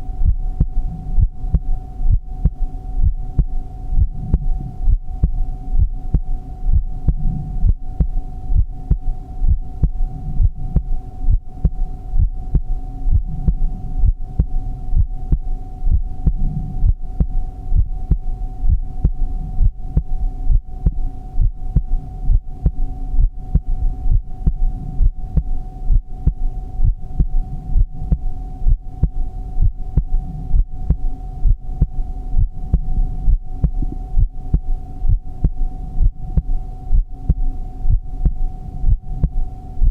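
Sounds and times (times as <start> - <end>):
heartbeat thumps: 0.0 - 39.9
steady hum: 0.0 - 39.9.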